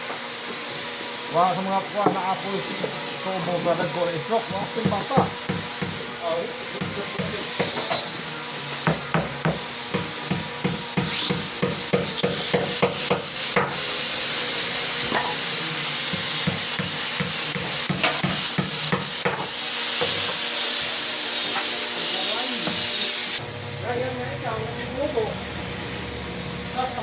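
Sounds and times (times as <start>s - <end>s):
hammer striking wood: 4.8s - 6.0s, 6.8s - 8.0s, 8.8s - 13.9s, 16.0s - 21.7s.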